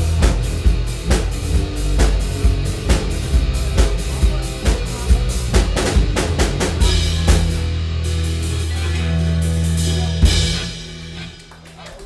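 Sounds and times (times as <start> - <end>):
drum hits: 0.0 - 7.8
live rock band: 0.0 - 11.8.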